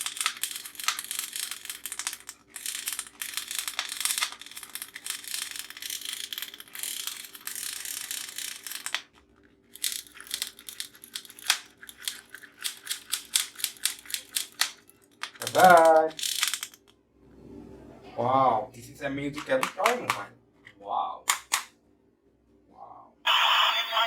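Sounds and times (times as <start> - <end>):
rapid sharp toy clicks: 0.0 - 16.9, 19.3 - 20.3, 21.3 - 21.7
toy crinkling and crackling: 0.0 - 17.0, 19.3 - 20.2.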